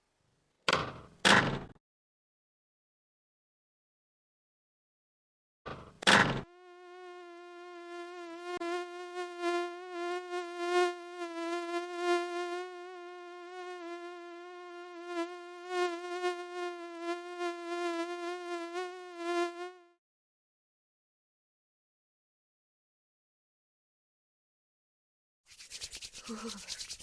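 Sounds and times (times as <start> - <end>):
mosquito buzzing: 6.4 - 20.0, 25.5 - 27.0.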